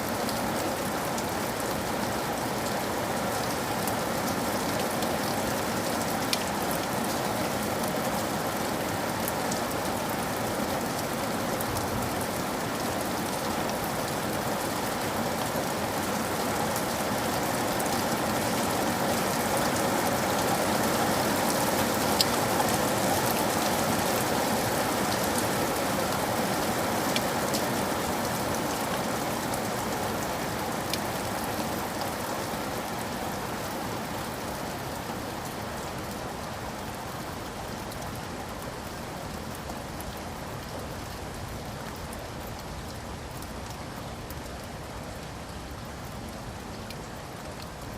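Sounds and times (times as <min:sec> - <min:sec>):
steady rain falling: 0:00.0 - 0:47.9.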